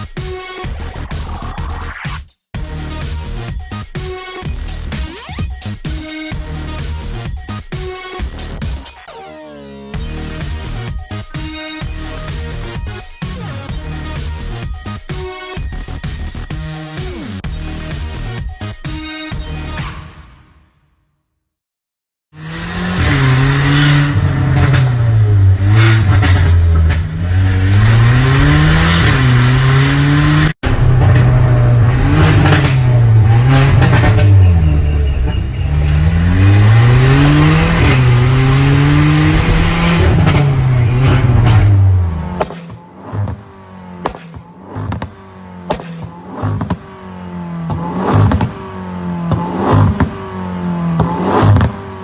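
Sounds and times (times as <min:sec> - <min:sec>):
car engine revving: 0:00.0 - 0:18.8, 0:22.4 - 0:52.0
exhaust pops and crackles: 0:39.4 - 0:47.0, 0:47.6 - 0:50.3, 0:50.9 - 0:51.9.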